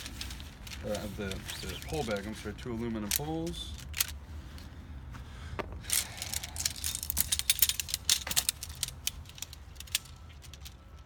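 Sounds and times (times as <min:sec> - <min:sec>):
tent poles clicking together: 0:03.0 - 0:04.2, 0:05.8 - 0:11.0.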